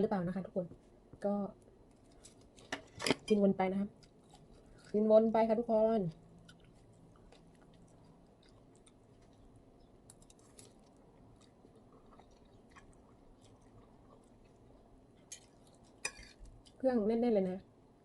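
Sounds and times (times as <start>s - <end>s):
faint chewing: 1.5s - 3.1s, 3.7s - 16.8s.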